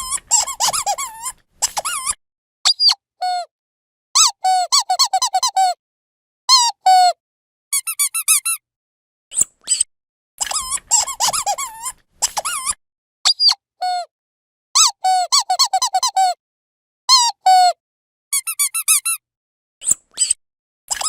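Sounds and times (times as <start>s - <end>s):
squeaky toy squeaking: 0.0s - 3.5s, 4.2s - 5.8s, 6.5s - 8.6s, 9.3s - 14.1s, 14.8s - 16.4s, 17.1s - 19.2s, 19.8s - 21.0s.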